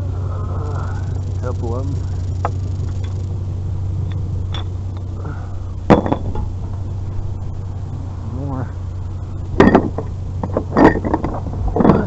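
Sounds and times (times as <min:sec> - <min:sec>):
vehicle engine idling: 0:00.0 - 0:12.0
loud metal clank: 0:05.9 - 0:06.8, 0:09.6 - 0:12.0
scrap metal clinking: 0:09.6 - 0:12.0.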